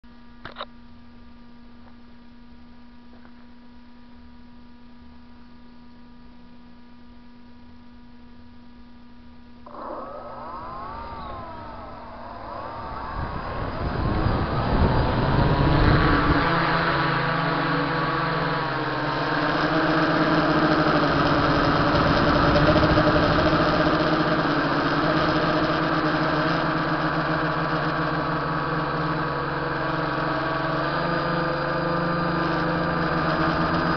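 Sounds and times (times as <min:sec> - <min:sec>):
faint electronic hum: 0:00.1 - 0:33.9
drone propellers whining: 0:09.6 - 0:33.9.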